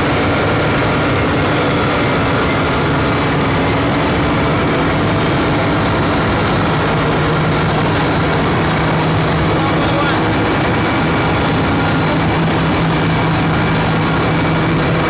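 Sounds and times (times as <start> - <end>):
engine drone: 0.0 - 15.0.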